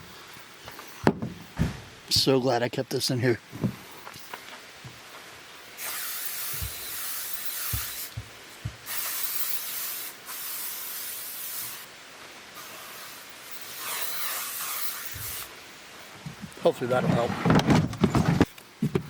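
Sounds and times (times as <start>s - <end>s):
aerosol can hissing: 5.8s - 8.2s, 8.8s - 11.9s, 12.6s - 15.5s
soft knocks: 7.8s - 8.8s.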